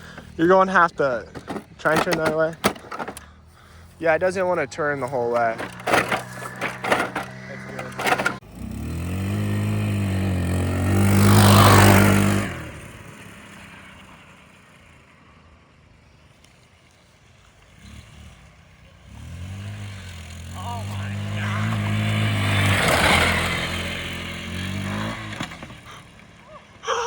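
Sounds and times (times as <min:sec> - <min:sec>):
scooter engine idling and revving: 0:00.0 - 0:15.5, 0:17.6 - 0:27.0
scooter passing by: 0:02.8 - 0:27.0.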